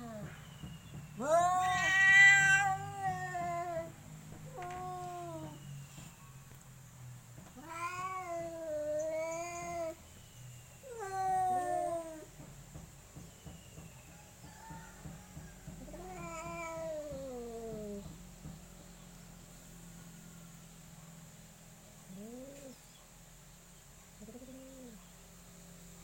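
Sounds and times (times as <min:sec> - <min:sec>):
cats yowling: 0:01.2 - 0:05.6, 0:07.6 - 0:10.0, 0:10.8 - 0:12.4, 0:15.8 - 0:18.2.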